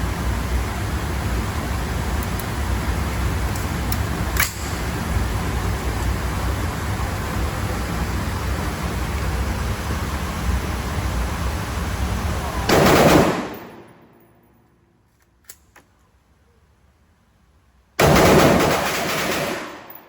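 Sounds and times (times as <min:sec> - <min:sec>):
steady loud rushing noise: 0:00.0 - 0:14.4
burst of gunfire: 0:12.7 - 0:14.2, 0:18.0 - 0:20.0.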